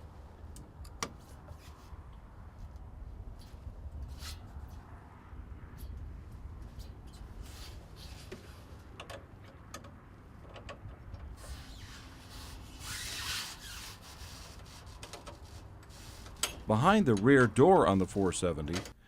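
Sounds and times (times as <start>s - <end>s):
low steady rumble: 0.0s - 12.9s
door rubbing scrape: 7.4s - 8.8s, 11.4s - 16.4s.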